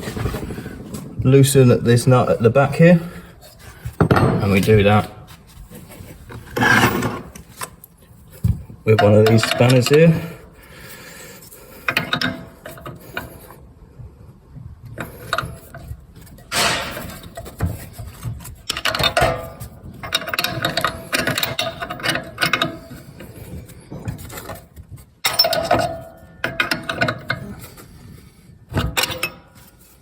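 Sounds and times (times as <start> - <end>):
spanner clinking and scraping on metal: 5.8 - 13.6, 14.9 - 30.0.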